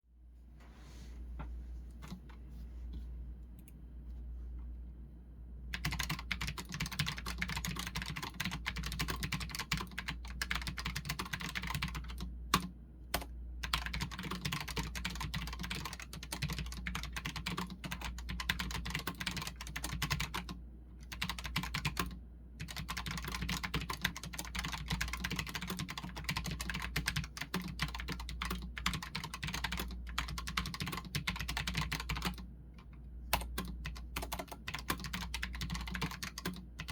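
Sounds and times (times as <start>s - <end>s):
steady low hum: 0.1s - 14.7s
rapid mechanical keyboard typing: 5.7s - 36.9s.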